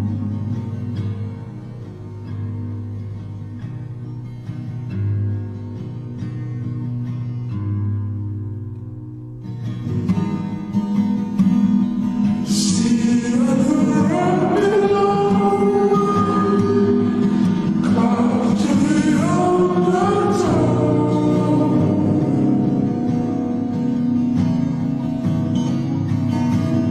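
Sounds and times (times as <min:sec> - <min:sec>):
soul song guitar: 0:00.0 - 0:26.9
person singing: 0:12.4 - 0:23.8.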